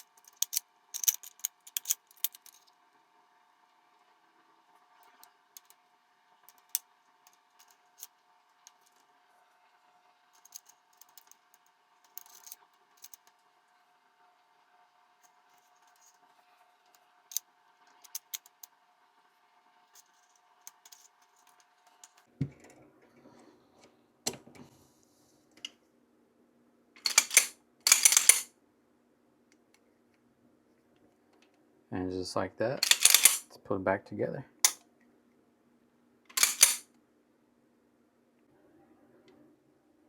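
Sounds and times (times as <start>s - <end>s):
faint steady hum: 0.0s - 40.0s
metal pistol parts clicking: 0.2s - 2.6s, 27.0s - 28.5s, 32.8s - 33.4s, 36.3s - 36.8s.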